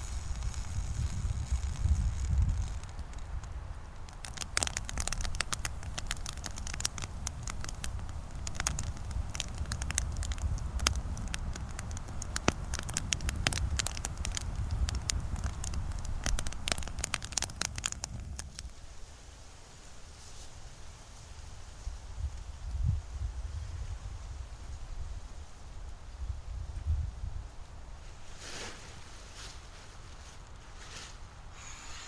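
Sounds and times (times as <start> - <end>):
campfire crackling and popping: 0.0 - 18.9.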